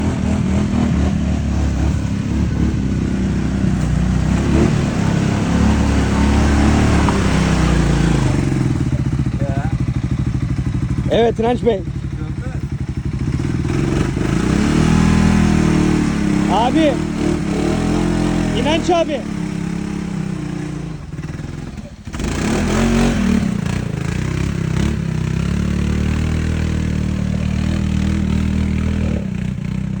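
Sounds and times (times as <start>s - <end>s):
atv engine revving: 0.0s - 30.0s.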